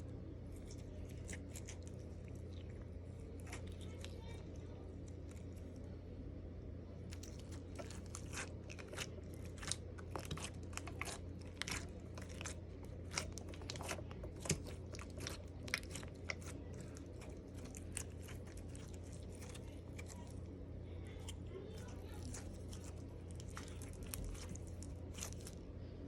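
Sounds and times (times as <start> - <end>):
slime crackling and popping: 7.1 - 20.4, 21.2 - 25.5.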